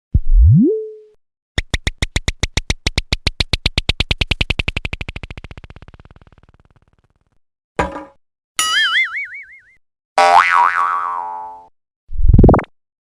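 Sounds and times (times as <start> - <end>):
cartoon rapid clicks: 1.6 - 7.1.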